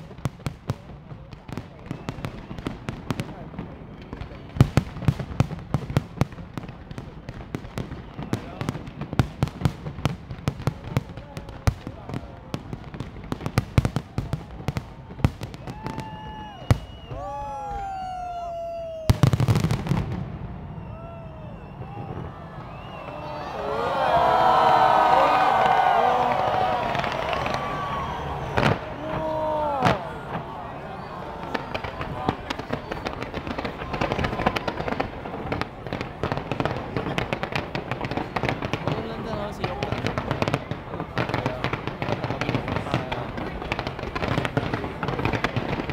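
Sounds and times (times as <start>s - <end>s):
fireworks bangs: 0.0s - 45.9s
fireworks crackling: 0.0s - 45.9s
fireworks whistling: 1.6s - 6.2s, 15.0s - 45.9s.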